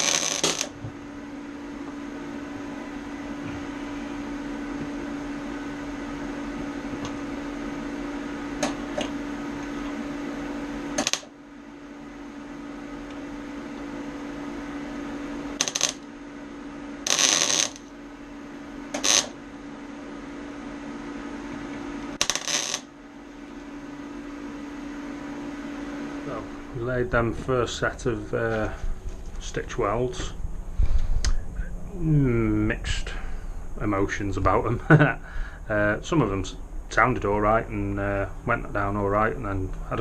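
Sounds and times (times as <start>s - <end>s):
welding arc bursts: 0.0s - 0.8s, 11.0s - 11.3s, 15.6s - 16.0s, 17.0s - 17.9s, 18.9s - 19.4s, 22.2s - 22.9s
steady hum: 0.0s - 40.0s.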